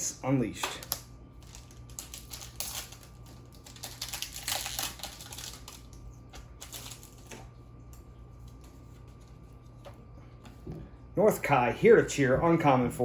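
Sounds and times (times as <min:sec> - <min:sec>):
foil wrapper crinkling: 0:00.7 - 0:07.5.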